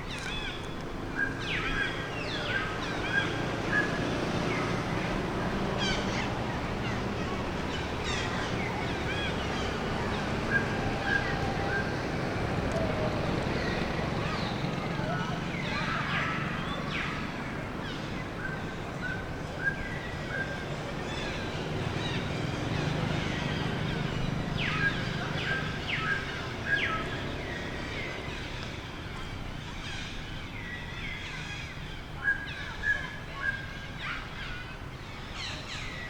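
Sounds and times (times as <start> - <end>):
monkey chirping calls: 12.8 - 27.7.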